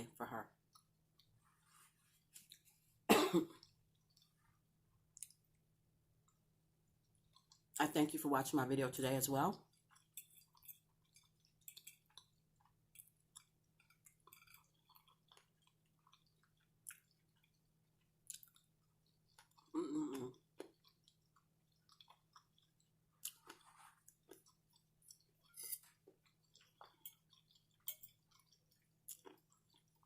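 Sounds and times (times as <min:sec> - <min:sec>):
person chewing food: 0:00.6 - 0:07.8, 0:09.5 - 0:30.0.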